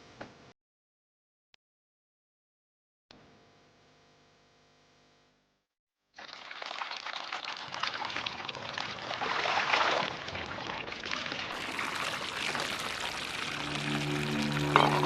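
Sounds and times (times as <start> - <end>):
water sloshing and splashing: 6.2 - 15.0.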